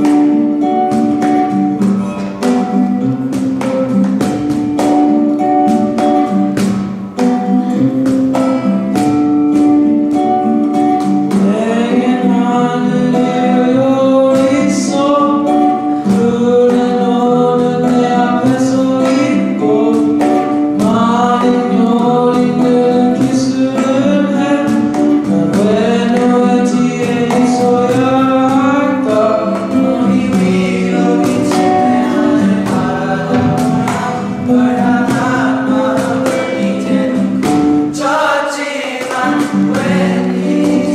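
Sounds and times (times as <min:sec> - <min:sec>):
plucked guitar: 0:00.0 - 0:40.9
choir singing: 0:28.6 - 0:40.9.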